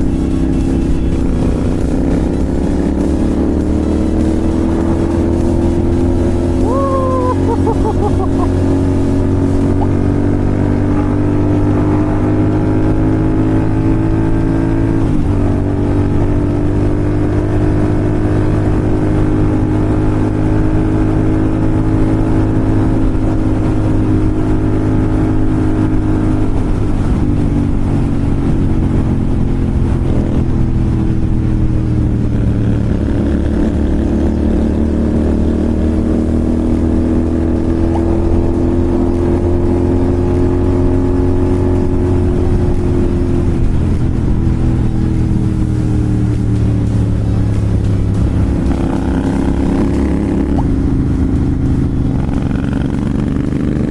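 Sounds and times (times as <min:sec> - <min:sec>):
motorcycle engine cruising: 0:00.0 - 0:53.9.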